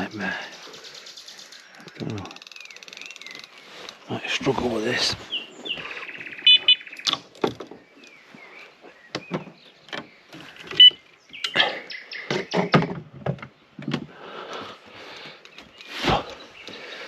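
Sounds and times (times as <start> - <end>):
fishing gear knocking and clattering: 1.6 - 4.0.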